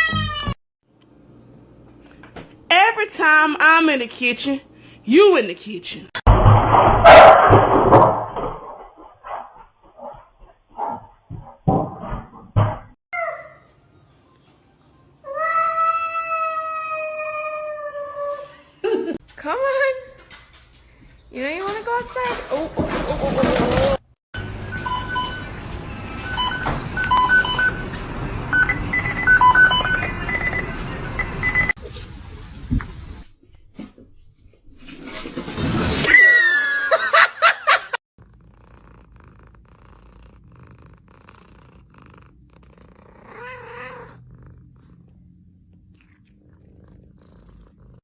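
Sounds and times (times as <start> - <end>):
cat meowing: 0.0 - 0.6, 43.1 - 44.2
high beeping tune: 24.7 - 31.7.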